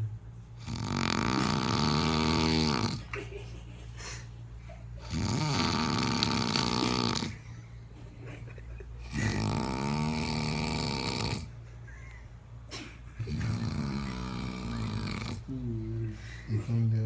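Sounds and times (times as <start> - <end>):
person snoring loudly: 0.6 - 3.0, 5.0 - 7.4, 9.1 - 11.5, 13.2 - 15.6
quiet breath: 15.5 - 16.8.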